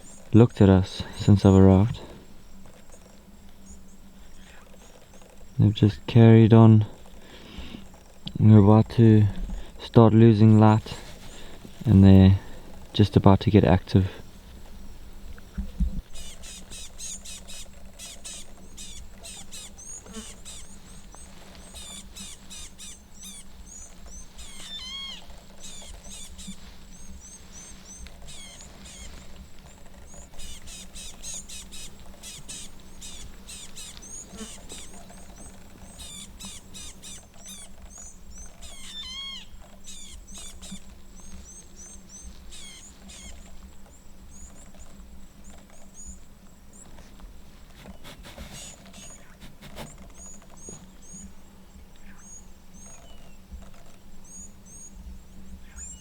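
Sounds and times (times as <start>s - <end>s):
small birds chirping: 0.0s - 56.0s
louder falling bird call: 16.2s - 29.2s.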